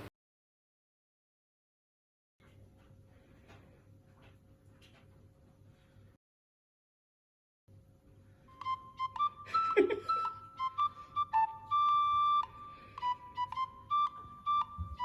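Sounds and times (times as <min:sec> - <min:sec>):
light music with flute melody: 0:08.5 - 0:15.0.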